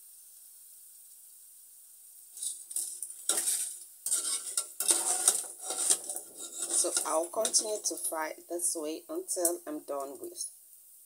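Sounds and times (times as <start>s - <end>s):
metal utensil scraping frying pan: 2.4s - 8.7s.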